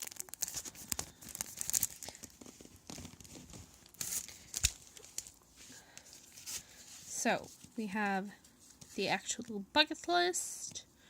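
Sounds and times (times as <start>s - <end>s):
sticker sheets crinkling: 0.0s - 7.8s.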